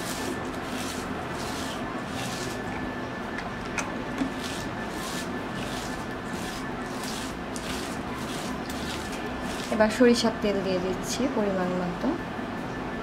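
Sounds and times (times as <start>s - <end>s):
hands squishing mashed potato: 0.0s - 2.8s, 4.2s - 9.9s
steady low hum: 0.0s - 13.0s.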